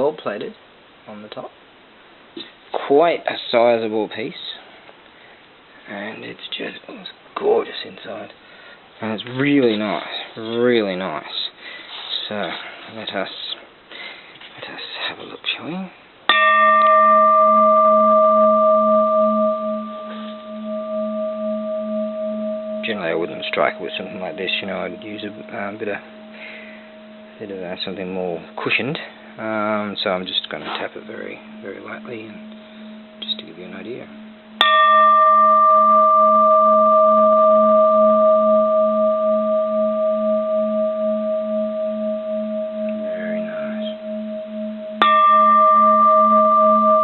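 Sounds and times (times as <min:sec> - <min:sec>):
temple bell ringing: 0:16.3 - 0:47.0
pulsing low hum: 0:16.9 - 0:28.6, 0:29.2 - 0:47.0.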